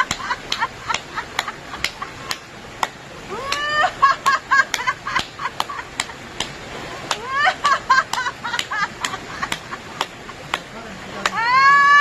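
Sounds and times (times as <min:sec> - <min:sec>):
sharp rhythmic clapping: 0:00.0 - 0:11.4
high-pitched rising whoop: 0:11.4 - 0:12.0.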